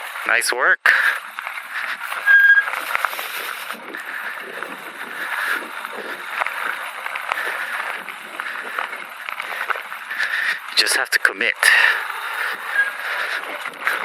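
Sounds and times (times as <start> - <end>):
bike rattling over bumps: 0.0 - 14.0
bike tyres on dirt and stones: 0.0 - 14.0.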